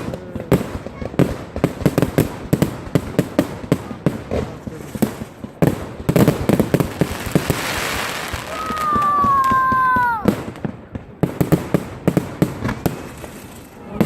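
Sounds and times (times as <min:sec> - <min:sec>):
firecrackers cracking and banging: 0:00.0 - 0:14.0
hissing rush of fireworks: 0:00.0 - 0:14.0
whistling firework: 0:06.7 - 0:10.6.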